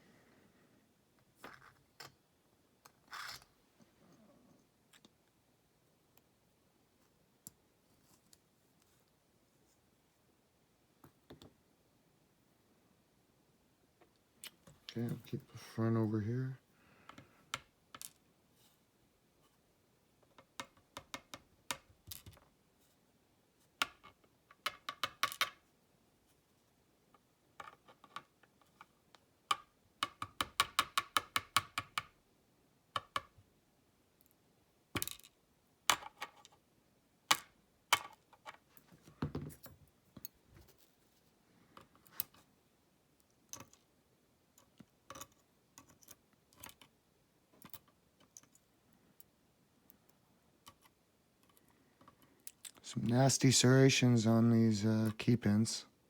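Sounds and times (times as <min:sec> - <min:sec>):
small metal lock parts clicking: 0:44.6 - 0:46.9.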